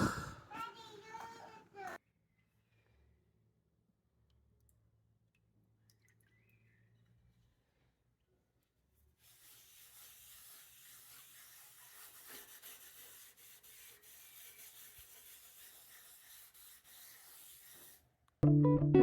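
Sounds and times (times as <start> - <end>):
hand rubbing on wood: 9.3 - 18.0
acoustic guitar music: 18.4 - 19.0.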